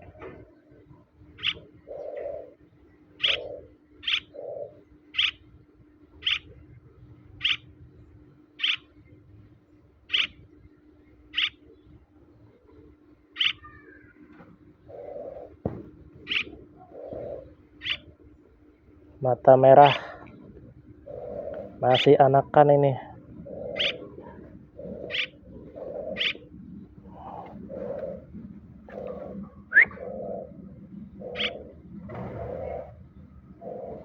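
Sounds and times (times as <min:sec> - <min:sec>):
low muffled sounds: 0:04.7 - 0:34.0
bird chirping: 0:05.1 - 0:05.4, 0:07.4 - 0:07.7, 0:08.6 - 0:09.0, 0:10.1 - 0:10.4, 0:11.2 - 0:12.5, 0:23.5 - 0:24.1, 0:31.2 - 0:31.7.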